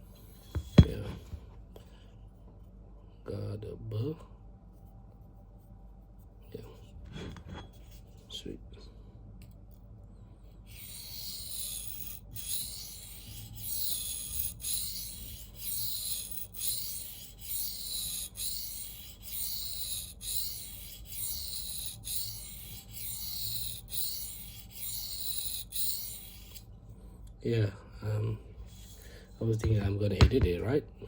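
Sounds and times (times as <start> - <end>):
knife rasping on sharpening plate: 10.7 - 26.6.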